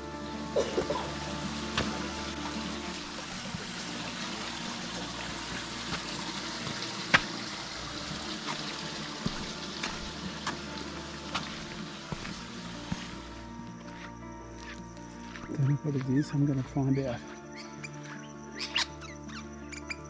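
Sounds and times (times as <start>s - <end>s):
creek water trickling: 0.0s - 14.0s.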